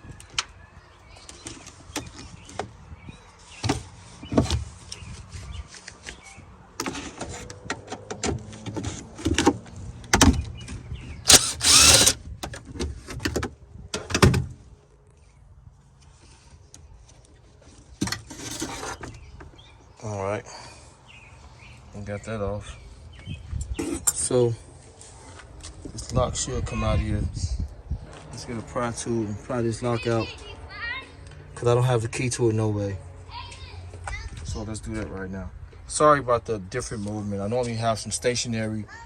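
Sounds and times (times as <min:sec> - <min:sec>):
harsh metal rasp: 0:11.3 - 0:12.2.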